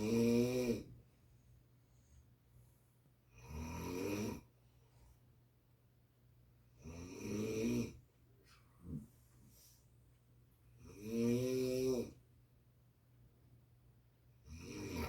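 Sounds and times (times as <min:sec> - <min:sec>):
person snoring: 0:00.0 - 0:00.9, 0:14.5 - 0:15.0.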